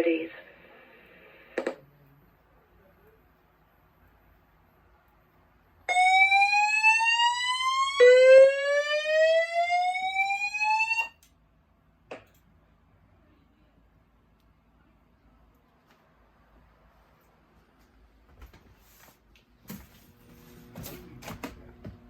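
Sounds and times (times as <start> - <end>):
fire alarm whoop tone: 5.9 - 11.2.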